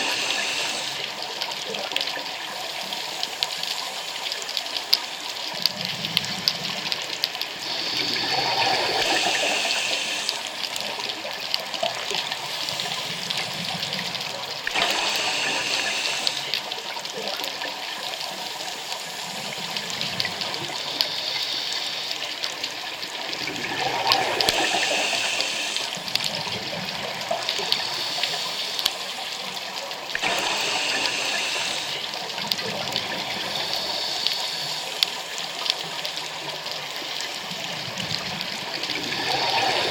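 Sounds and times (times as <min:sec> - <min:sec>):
regulator hiss on inhale: 0:00.0 - 0:01.6, 0:02.7 - 0:05.2, 0:07.4 - 0:11.2, 0:11.8 - 0:17.2, 0:18.2 - 0:37.6, 0:38.8 - 0:39.9
exhaled bubbles rushing: 0:05.9 - 0:16.5, 0:23.0 - 0:27.8, 0:37.8 - 0:39.9.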